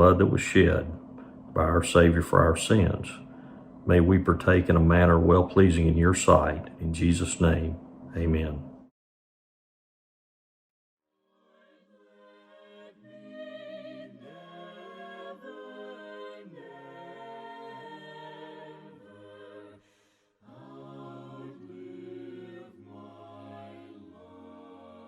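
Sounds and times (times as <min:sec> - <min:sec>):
choir singing a hymn: 0:11.4 - 0:25.0.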